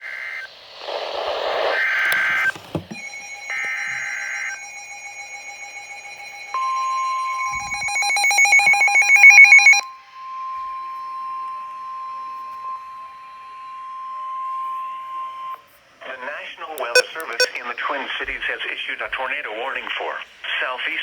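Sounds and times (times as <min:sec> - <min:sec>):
screechy digital data bursts: 0:00.1 - 0:10.1
fast pulsing beep: 0:01.8 - 0:15.6, 0:16.9 - 0:17.9
steady alert tone: 0:02.9 - 0:09.8.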